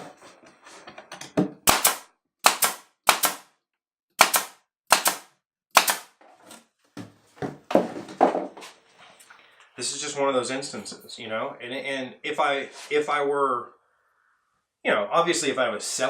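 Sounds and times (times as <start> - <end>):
nail gun firing sharp pops: 1.7 - 3.5, 4.2 - 6.2.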